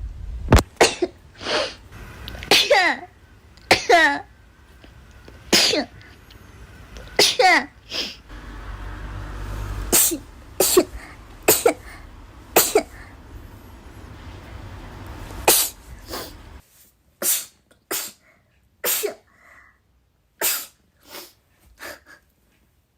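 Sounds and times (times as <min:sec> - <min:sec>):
low steady hum: 0:00.0 - 0:16.6.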